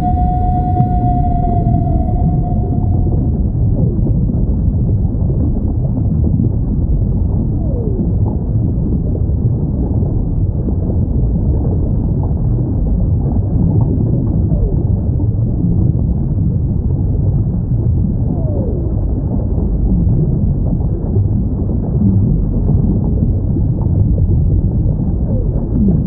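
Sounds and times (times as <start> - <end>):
whale moans: 0.0 - 3.5
low ocean rumble: 0.0 - 26.0.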